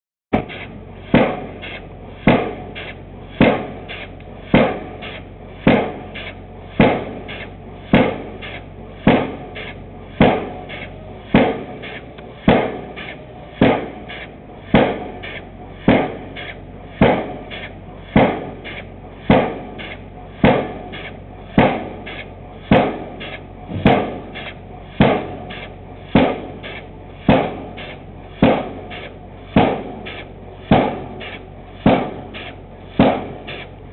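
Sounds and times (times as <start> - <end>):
pile hammer striking: 0.3 - 33.7
low steady hum: 0.4 - 33.9.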